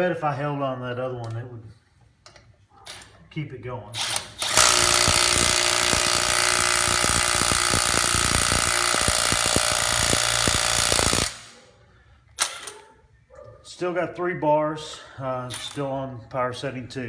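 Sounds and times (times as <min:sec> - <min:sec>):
impact wrench hammering on lug nut: 0:04.4 - 0:11.5.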